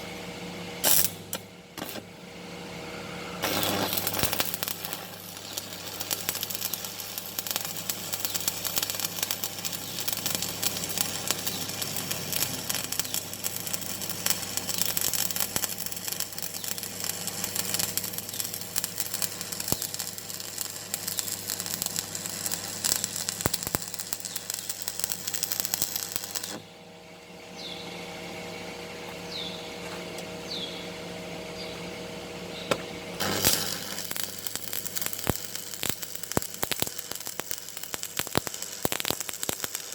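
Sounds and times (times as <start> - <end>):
welding arc crackling and sizzling: 0.8 - 2.3, 3.4 - 26.7, 33.2 - 39.9.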